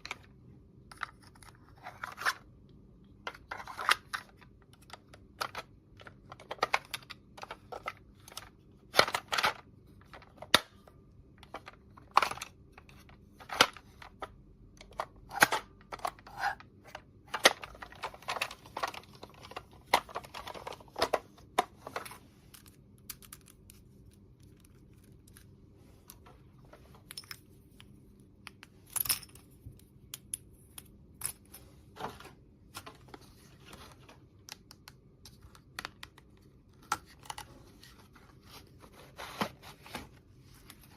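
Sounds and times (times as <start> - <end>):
rustling and scraping: 31.5 - 34.3, 37.2 - 40.9.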